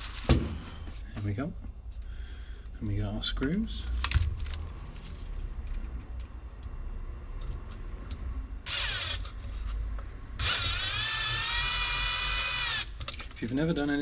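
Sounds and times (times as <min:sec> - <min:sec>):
cordless drill motor whine: 0:08.6 - 0:09.3, 0:10.4 - 0:13.0.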